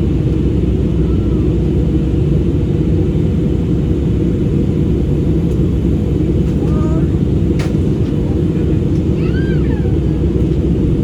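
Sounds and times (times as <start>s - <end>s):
jet engine rumble in cabin: 0.0s - 11.0s.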